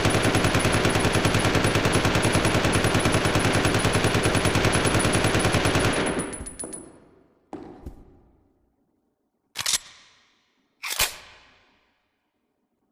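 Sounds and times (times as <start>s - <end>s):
submachine gun full-auto burst: 0.0s - 6.2s.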